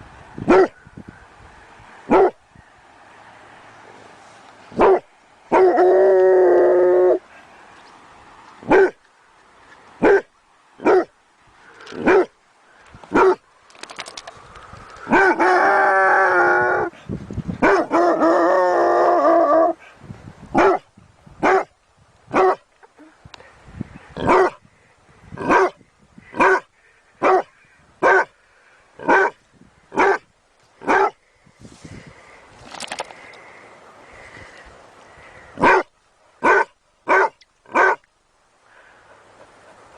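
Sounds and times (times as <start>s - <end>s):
dog barking: 2.1s - 2.4s, 4.8s - 5.7s, 8.7s - 9.0s, 10.0s - 11.1s, 12.0s - 12.3s, 13.1s - 13.4s, 17.6s - 18.1s, 20.6s - 20.8s, 21.4s - 21.7s, 22.3s - 22.6s, 24.2s - 24.6s, 26.4s - 26.6s, 27.2s - 28.3s, 29.0s - 29.4s, 30.0s - 30.2s, 30.8s - 31.2s, 35.6s - 38.0s
dog wavering howl: 15.1s - 17.0s.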